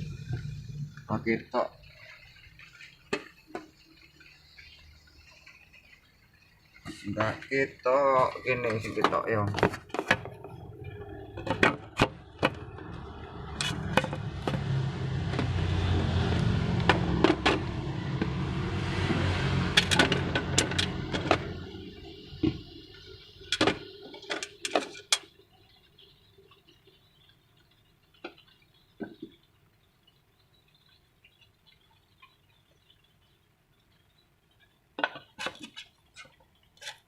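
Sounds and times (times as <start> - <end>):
vehicle passing rumble: 0.0 - 9.3, 10.2 - 24.0.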